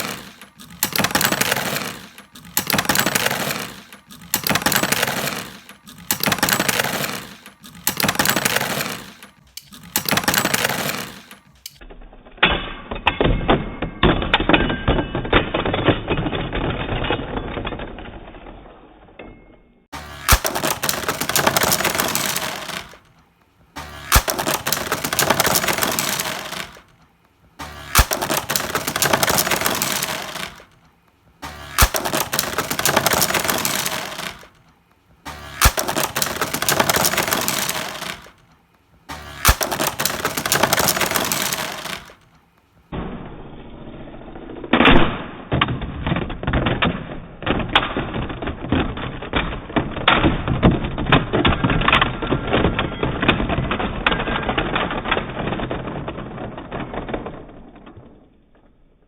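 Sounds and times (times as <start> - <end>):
rapid plastic clicks and clatter: 0.0 - 11.8, 20.0 - 42.7
spinning tops clashing and rattling: 0.0 - 11.8, 20.0 - 23.1, 23.8 - 27.0, 27.6 - 30.8, 31.4 - 34.6, 35.3 - 38.4, 39.1 - 42.3.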